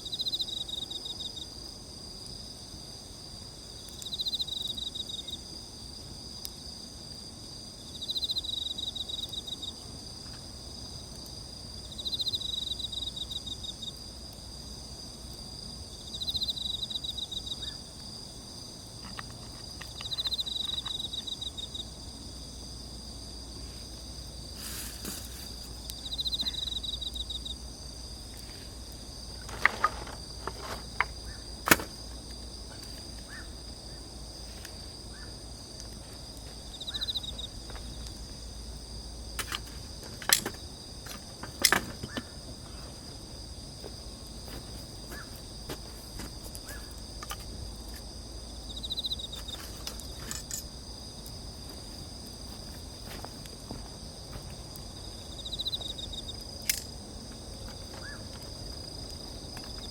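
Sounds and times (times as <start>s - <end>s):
pulsing insect trill: 0.0s - 1.6s, 2.4s - 6.9s, 7.5s - 14.2s, 15.5s - 59.9s
insects chirping: 0.0s - 59.9s
campfire crackling and popping: 1.4s - 7.3s, 9.2s - 21.3s, 24.3s - 37.0s.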